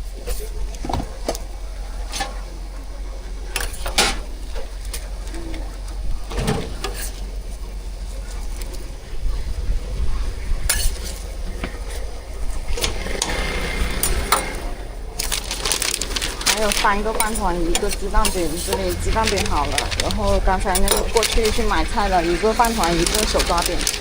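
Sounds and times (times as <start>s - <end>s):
steady low hum: 0.0s - 24.0s
utensils clinking against pans: 6.3s - 7.3s, 10.6s - 24.0s.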